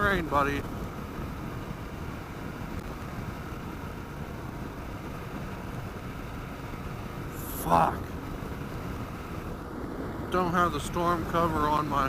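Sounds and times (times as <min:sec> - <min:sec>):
motorcycle engine drone: 0:00.0 - 0:12.0.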